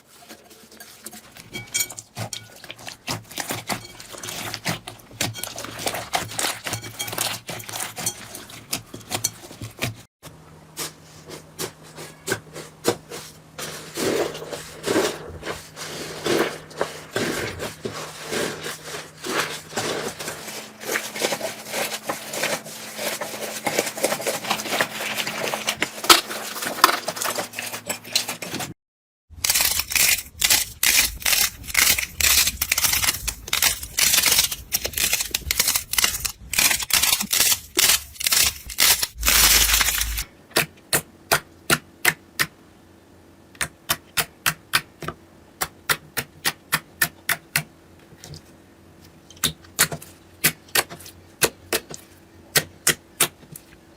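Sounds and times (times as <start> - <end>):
slime crackling and popping: 31.3 - 40.2
crunchy slime bursts: 35.6 - 40.2.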